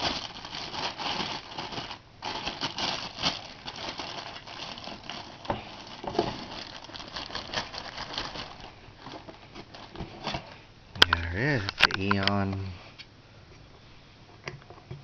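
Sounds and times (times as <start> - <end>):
packaging rustling and crinkling: 0.0 - 10.6.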